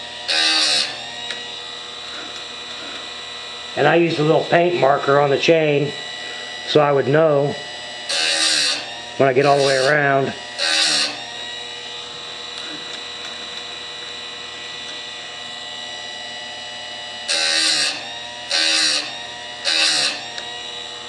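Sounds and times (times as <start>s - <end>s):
grinding wheel on chain: 0.0s - 1.4s, 8.1s - 11.6s, 17.3s - 20.5s
sharpener motor whine: 0.0s - 21.0s.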